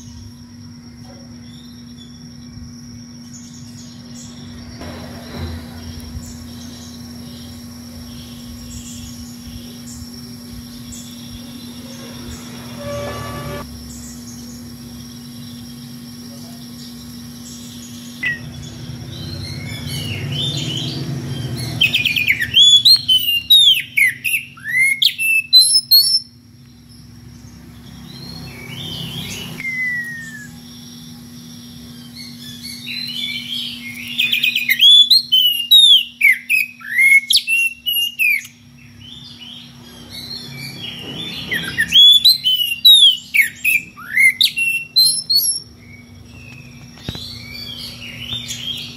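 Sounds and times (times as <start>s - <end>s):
low rumble: 10.6s - 13.7s
bird singing whistled phrases: 29.6s - 30.6s, 33.9s - 38.5s.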